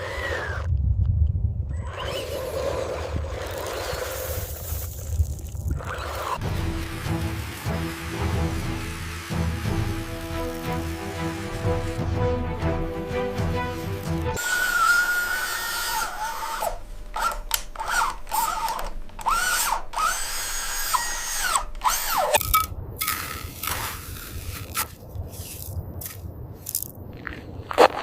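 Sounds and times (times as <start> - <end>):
small electric motors whining: 0.0 - 0.7, 1.7 - 25.7.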